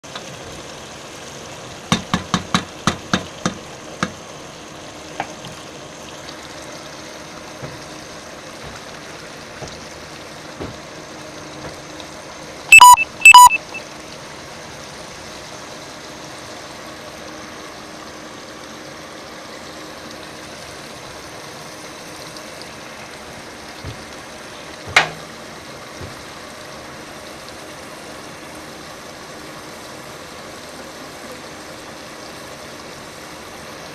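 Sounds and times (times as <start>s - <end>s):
loud electronic beeps: 12.7s - 13.8s.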